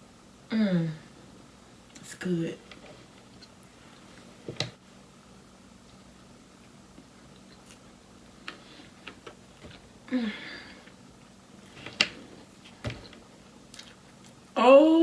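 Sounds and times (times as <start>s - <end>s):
person humming mm: 0.5s - 1.1s, 10.1s - 10.8s
chewing with wet mouth clicks: 13.7s - 14.4s.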